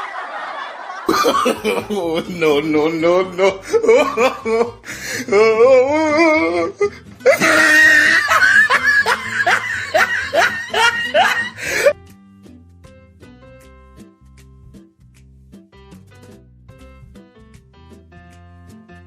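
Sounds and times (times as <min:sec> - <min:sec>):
background music: 0:01.0 - 0:19.0
loud warbling laughter: 0:03.4 - 0:04.8, 0:07.3 - 0:11.9.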